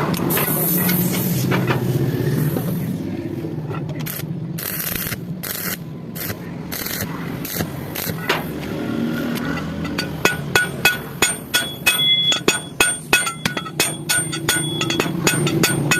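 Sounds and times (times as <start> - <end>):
welding arc hissing and crackling: 4.1 - 8.2.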